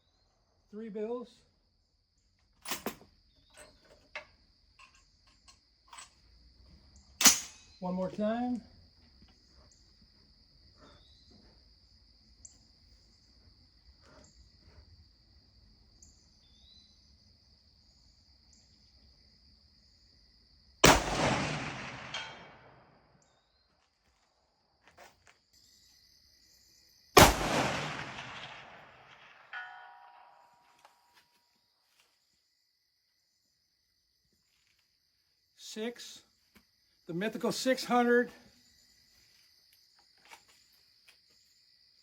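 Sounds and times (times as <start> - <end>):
rifle shots: 7.2 - 7.6, 20.8 - 22.9, 27.2 - 30.4
gunshot echo rolling away: 20.8 - 23.0, 27.2 - 30.9.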